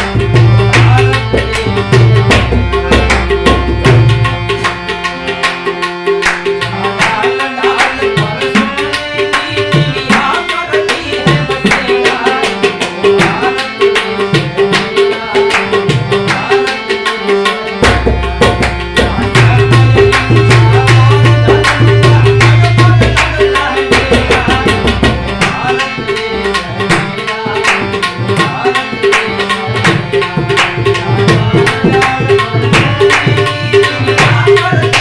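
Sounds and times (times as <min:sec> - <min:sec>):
harmonium melody: 0:00.0 - 0:35.0
tabla rhythm: 0:00.0 - 0:35.0.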